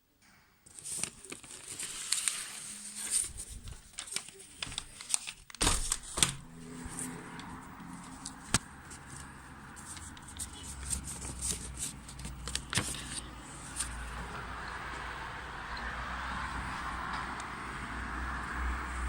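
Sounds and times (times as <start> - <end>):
paper creasing snaps: 0.7 - 14.0
paper rustling and crinkling: 0.7 - 14.3.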